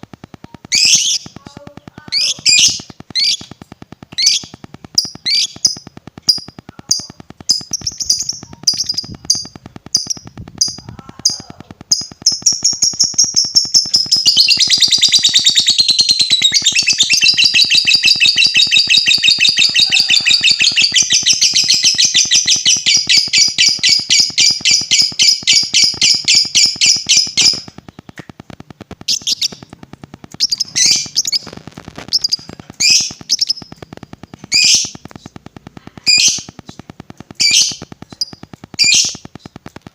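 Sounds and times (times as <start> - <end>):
lovebird chirping: 0.4 - 28.3, 29.0 - 39.8
lovebird chattering trill: 0.6 - 28.2, 29.0 - 39.6.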